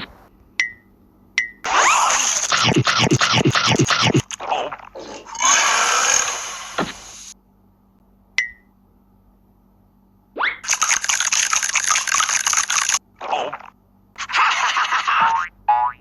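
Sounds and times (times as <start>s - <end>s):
cartoon falling pitch sounds: 1.7s - 4.7s, 5.3s - 6.6s
click with ringing tone: 8.4s - 8.7s.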